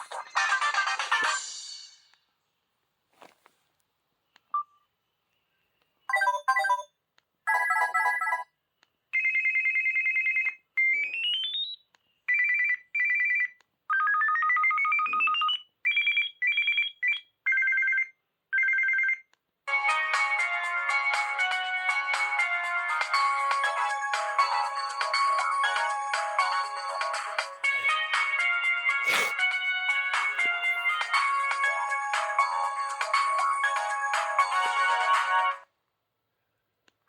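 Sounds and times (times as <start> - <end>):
phone ringtones: 6.1 - 6.9, 7.5 - 8.5, 9.2 - 19.2.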